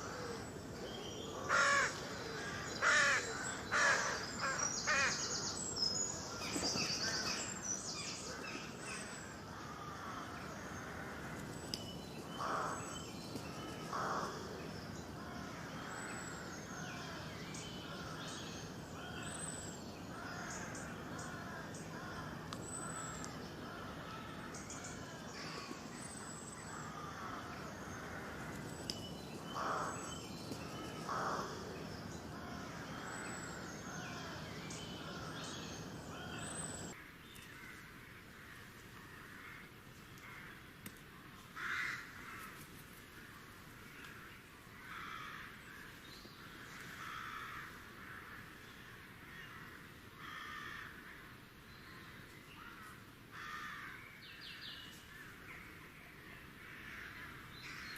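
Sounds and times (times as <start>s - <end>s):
crows cawing: 0.0s - 0.6s, 1.2s - 5.5s, 8.1s - 11.5s, 12.4s - 12.9s, 13.8s - 17.3s, 17.9s - 18.3s, 20.1s - 25.9s, 26.6s - 28.8s, 29.4s - 40.6s, 41.5s - 42.6s, 44.8s - 45.9s, 46.6s - 48.6s, 49.3s - 51.3s, 52.6s - 54.1s, 56.6s - 57.9s
outdoor background noise: 0.0s - 57.9s.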